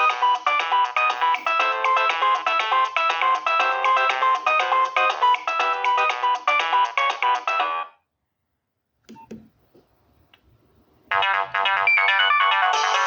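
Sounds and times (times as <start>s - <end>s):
phone ringtone: 0.0s - 7.9s, 11.1s - 13.0s.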